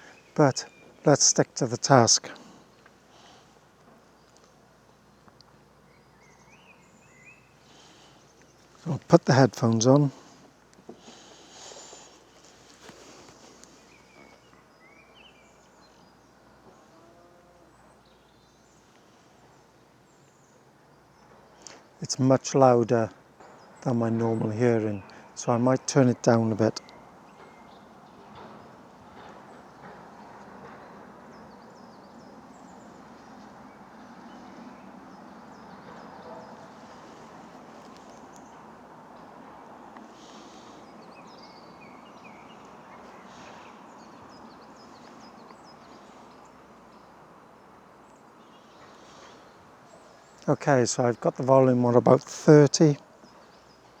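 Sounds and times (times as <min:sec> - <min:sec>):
small songbird calling: 0:00.0 - 0:22.1, 0:23.4 - 0:51.1
distant road traffic rumble: 0:00.0 - 0:54.0.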